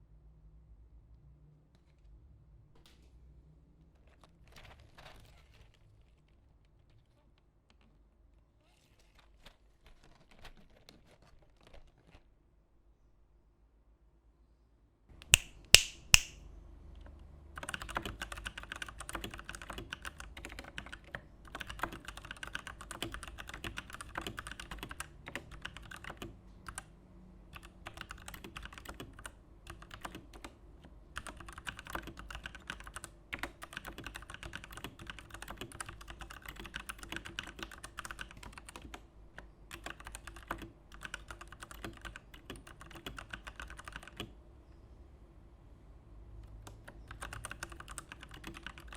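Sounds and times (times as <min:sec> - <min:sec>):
mechanical keyboard typing: 0:17.6 - 0:26.9, 0:27.5 - 0:44.3, 0:46.4 - 0:48.9.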